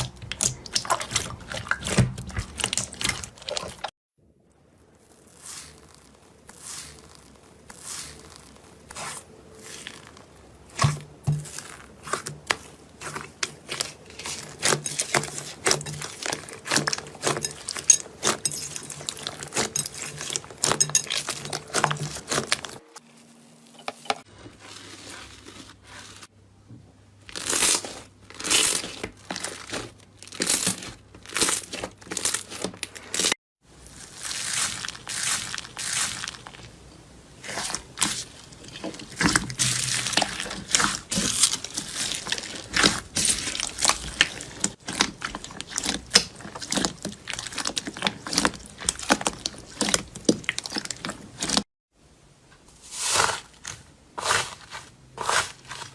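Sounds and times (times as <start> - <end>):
slime crackling and popping: 4.5 - 22.8, 27.3 - 36.8, 37.4 - 51.6.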